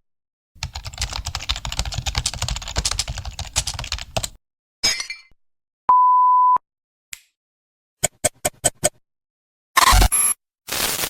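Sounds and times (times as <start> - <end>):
pure-tone censor bleep: 5.9 - 6.6.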